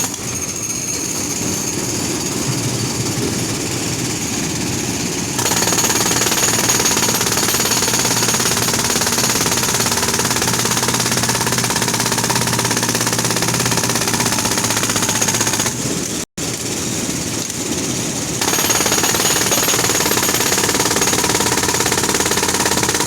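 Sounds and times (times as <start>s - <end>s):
road drill hammering: 5.4s - 15.9s, 18.4s - 23.0s.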